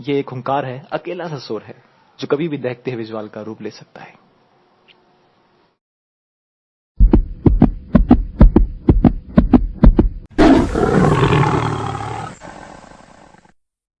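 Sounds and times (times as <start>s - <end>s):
deep beats: 7.0s - 10.3s
big cat roar: 10.4s - 13.5s.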